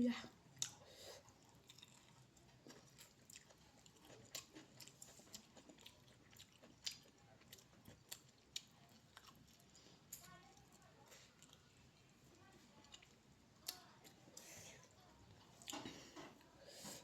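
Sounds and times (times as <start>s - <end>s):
person chewing food: 0.5s - 17.0s.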